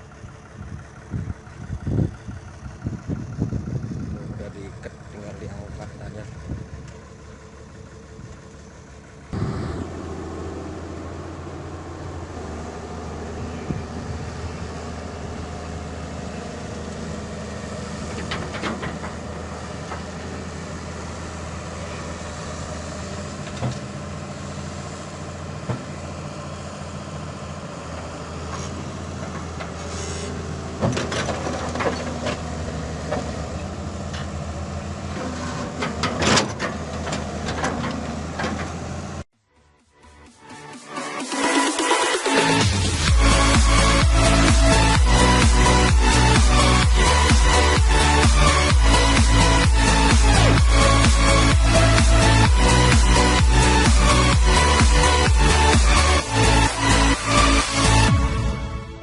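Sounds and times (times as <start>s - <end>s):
large vehicle engine idling: 0.0s - 39.9s, 41.2s - 59.0s
clanks and knocks: 18.1s - 19.2s, 30.8s - 32.4s, 35.4s - 38.8s.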